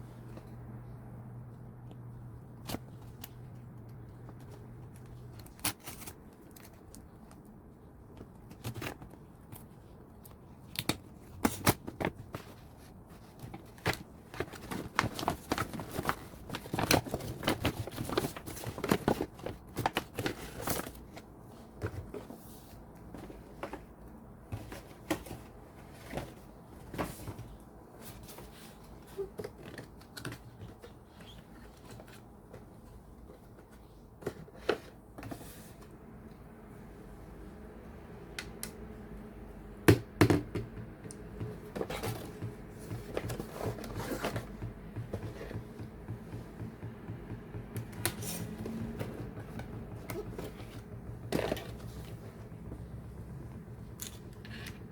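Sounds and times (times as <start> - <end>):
packaging clicks and crinkles: 2.7 - 21.3.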